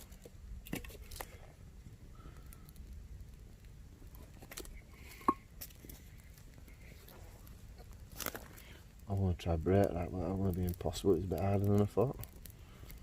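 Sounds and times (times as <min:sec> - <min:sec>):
bark and twigs crackling: 0:00.0 - 0:13.0
twig snapping: 0:07.8 - 0:08.7, 0:10.5 - 0:13.0.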